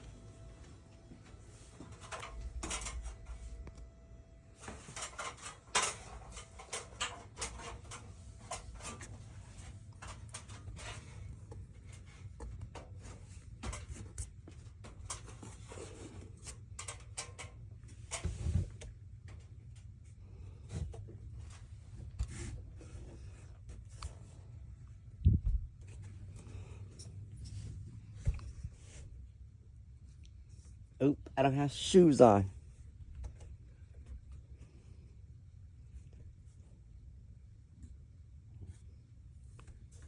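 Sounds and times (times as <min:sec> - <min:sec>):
steady low hum: 0:00.0 - 0:40.0
handling knocks and clicks: 0:01.8 - 0:03.8.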